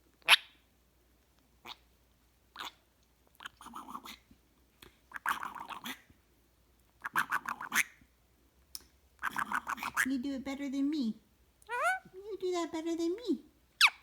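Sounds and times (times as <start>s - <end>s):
parrot gurgling chatter: 3.4s - 4.2s, 5.1s - 6.0s, 7.0s - 7.9s, 9.2s - 10.1s, 11.7s - 12.1s.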